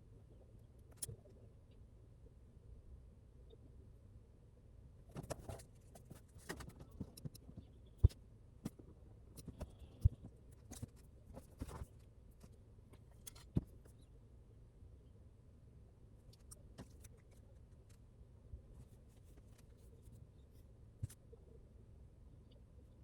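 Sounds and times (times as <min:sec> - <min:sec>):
handling clicks and rustles: 0:05.1 - 0:14.0.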